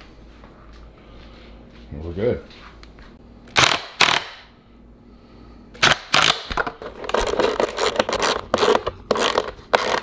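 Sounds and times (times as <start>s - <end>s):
tools and metal parts rattling: 6.5s - 10.0s.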